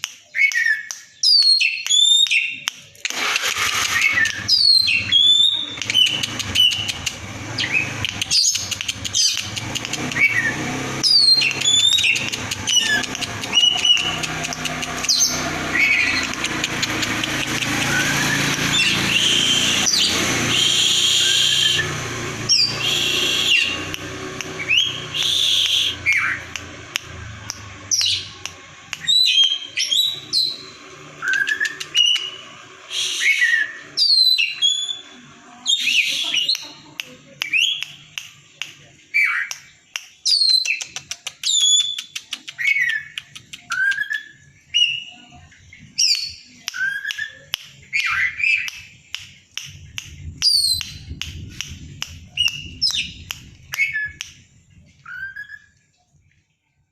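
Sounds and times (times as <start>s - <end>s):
bird singing whistled notes: 0.3s - 2.7s, 4.0s - 6.9s, 10.1s - 14.2s, 17.9s - 26.5s, 29.0s - 35.1s, 40.2s - 48.9s, 50.4s - 51.2s, 52.2s - 54.2s, 55.0s - 55.9s.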